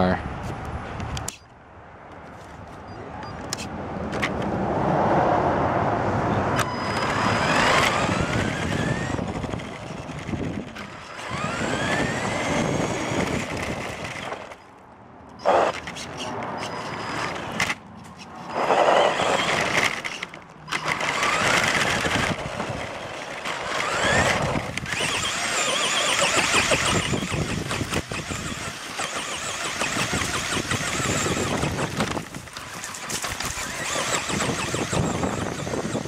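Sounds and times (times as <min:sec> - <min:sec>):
tire and ground rushing: 0:02.0 - 0:36.0
electric motor whining: 0:06.6 - 0:14.6, 0:15.4 - 0:36.0.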